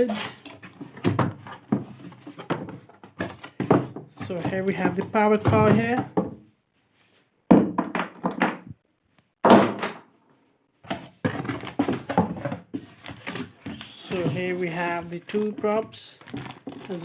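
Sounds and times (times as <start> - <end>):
packaging rustle: 11.4 - 17.0.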